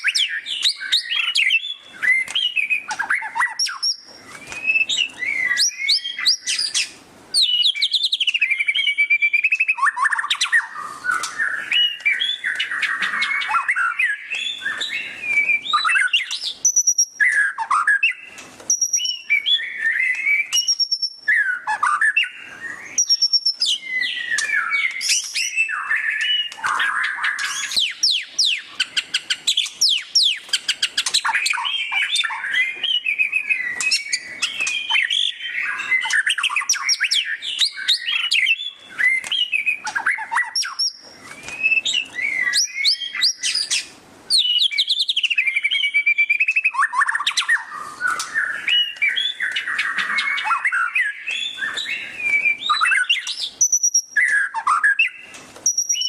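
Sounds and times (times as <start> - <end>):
bird singing whistled phrases: 0.0 - 56.0
bird chattering trills: 15.8 - 45.4, 46.4 - 56.0.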